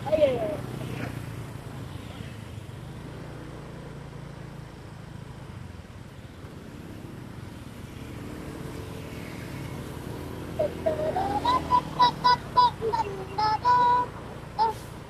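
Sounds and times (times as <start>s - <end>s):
road noise: 0.0s - 15.0s
vehicle engine running: 9.8s - 15.0s.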